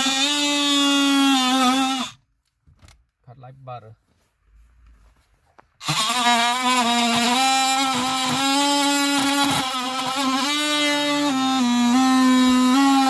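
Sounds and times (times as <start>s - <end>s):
oscillating multi-tool buzzing: 0.0s - 2.2s, 5.8s - 13.0s.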